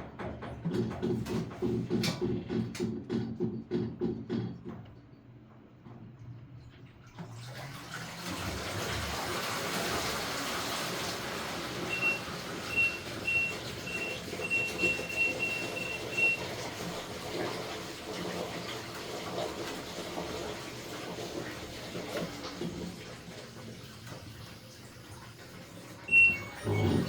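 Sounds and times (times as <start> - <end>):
washing machine water sloshing: 5.9 - 27.0
short high electronic beeps: 26.1 - 27.0.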